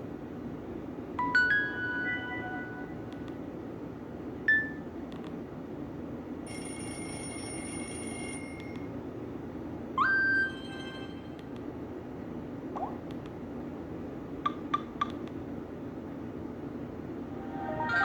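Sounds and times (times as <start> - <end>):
upward sweeping tone: 17.4 - 18.0
electronic phone tones: 17.5 - 18.0.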